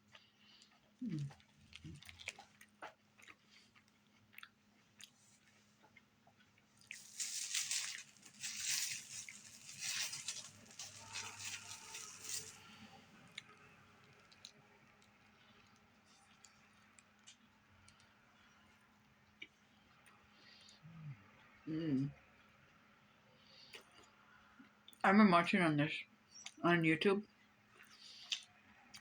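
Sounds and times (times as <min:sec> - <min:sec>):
crunching and crinkling: 0:00.0 - 0:18.1
person chewing: 0:00.0 - 0:18.1, 0:27.7 - 0:29.0.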